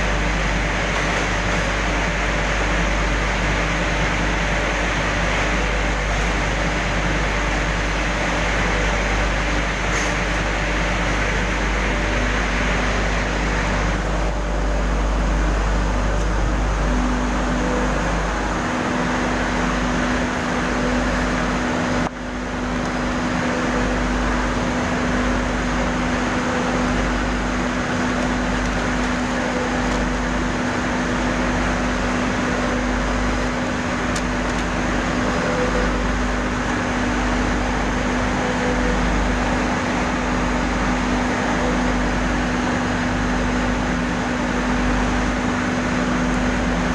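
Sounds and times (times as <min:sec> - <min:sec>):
industrial furnace roaring: 0:00.0 - 0:46.9.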